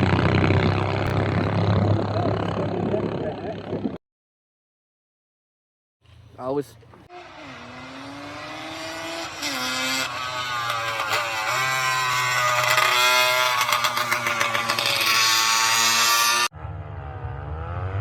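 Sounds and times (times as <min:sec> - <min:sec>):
racing engine accelerating: 0:07.1 - 0:18.0.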